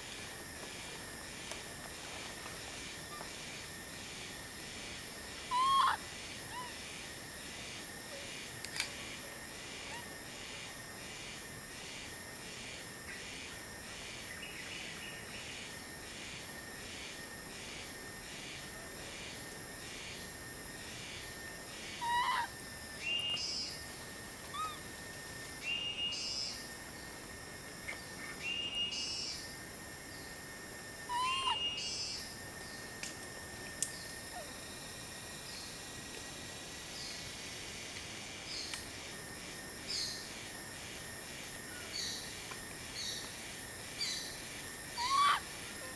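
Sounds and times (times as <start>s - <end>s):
pulsing insect chorus: 0.0s - 45.9s
high arching animal calls: 5.4s - 6.8s, 21.9s - 22.6s, 24.4s - 24.9s, 31.1s - 31.8s, 44.9s - 45.5s.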